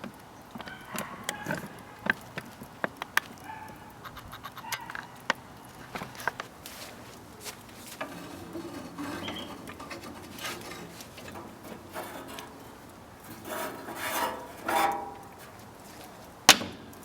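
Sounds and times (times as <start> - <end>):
scraping and rubbing strokes: 6.0 - 16.5.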